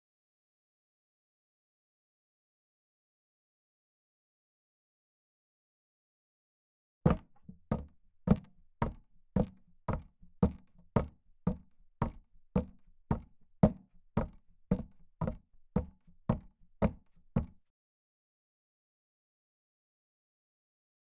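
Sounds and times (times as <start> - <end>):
sharp hollow knocks: 7.1 - 9.5.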